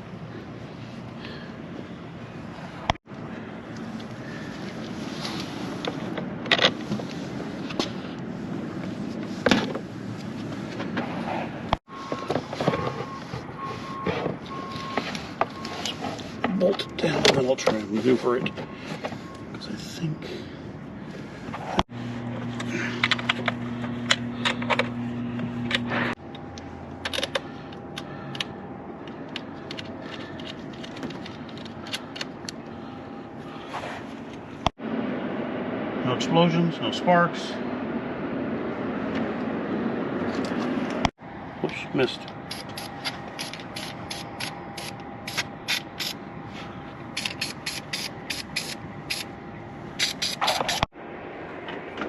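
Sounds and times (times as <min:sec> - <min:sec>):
low hum: 0:18.4 - 0:52.0.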